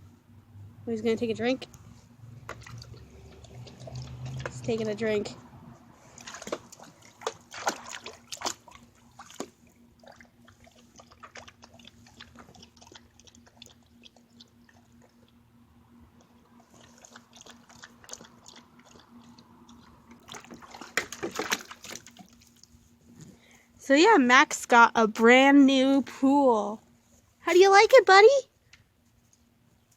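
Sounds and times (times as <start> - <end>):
dog lapping water: 2.4 - 5.2, 5.9 - 15.4, 16.2 - 22.8.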